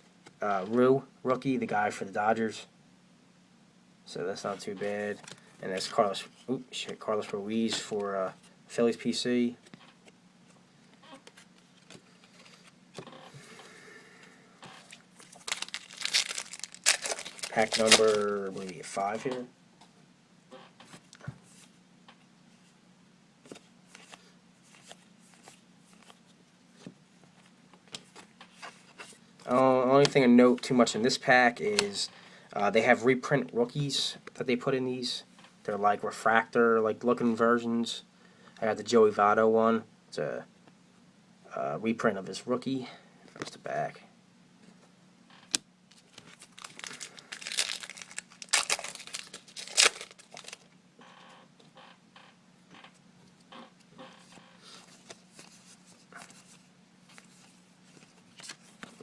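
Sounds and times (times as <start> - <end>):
trading cards rustling and clicking: 14.8 - 19.4, 45.9 - 50.7
wrapper being torn and crinkled: 15.2 - 18.8, 45.9 - 50.7.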